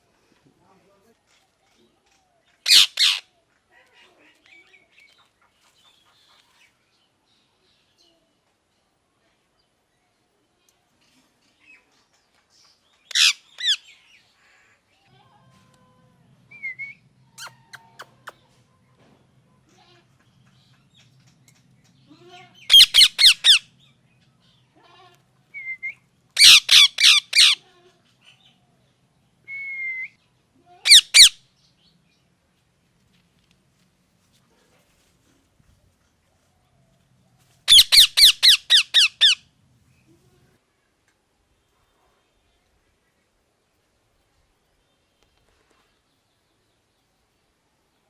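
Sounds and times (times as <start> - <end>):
parrot squawking: 2.7 - 3.2, 13.1 - 13.8, 22.6 - 23.6, 26.4 - 27.6, 30.8 - 31.4, 37.7 - 39.4.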